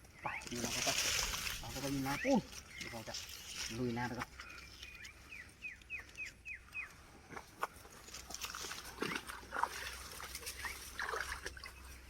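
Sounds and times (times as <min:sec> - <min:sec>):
wading through shallow water: 0:00.0 - 0:12.0.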